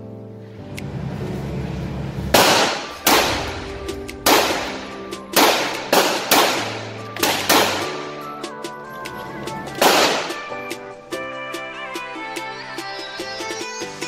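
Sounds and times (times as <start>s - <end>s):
gunshots with echo: 2.3s - 8.3s, 9.8s - 10.6s.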